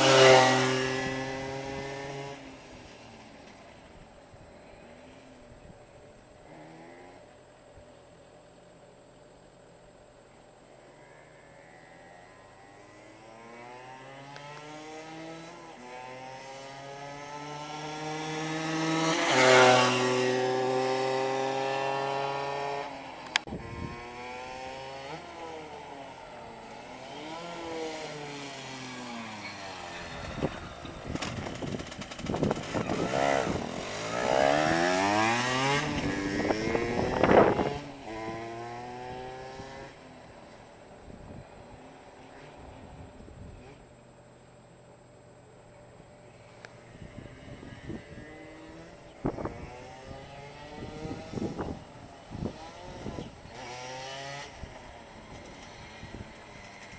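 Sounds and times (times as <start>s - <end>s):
motorbike engine revving: 0.0s - 2.7s, 11.7s - 40.2s, 46.9s - 56.9s.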